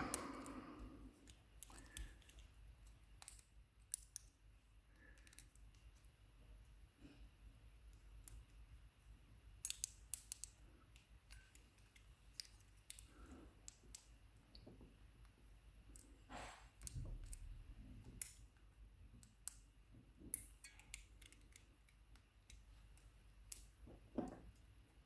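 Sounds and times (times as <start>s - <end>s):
metallic clicks of lock parts: 3.1s - 4.4s, 5.1s - 5.9s, 9.6s - 14.6s, 20.3s - 24.7s.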